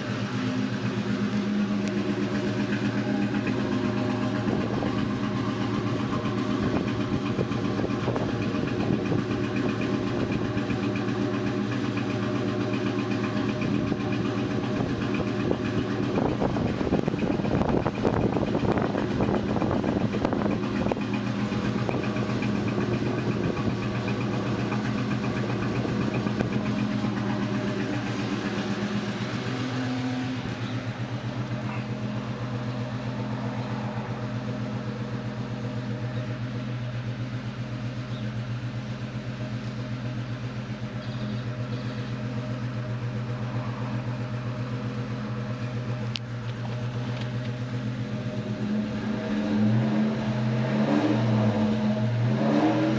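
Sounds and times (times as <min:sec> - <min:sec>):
car engine idling with misfire: 0:00.0 - 0:52.9.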